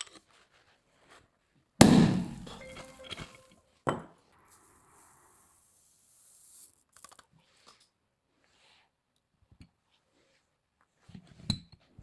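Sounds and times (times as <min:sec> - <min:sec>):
popcorn machine bang: 0:01.8 - 0:02.6.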